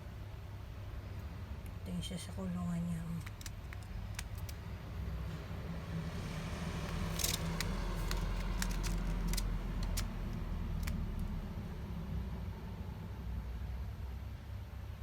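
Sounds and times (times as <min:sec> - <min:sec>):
steady low hum: 0:00.0 - 0:15.0
bird clicking on wire cage: 0:03.2 - 0:04.6, 0:06.9 - 0:11.0.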